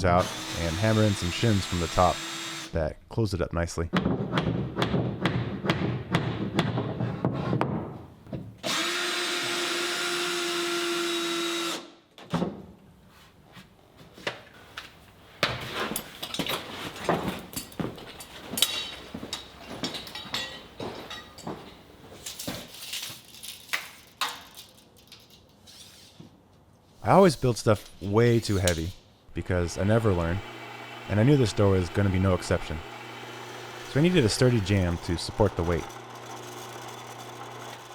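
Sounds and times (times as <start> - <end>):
power drill running: 0.0 - 2.8, 8.6 - 11.9, 29.6 - 37.9.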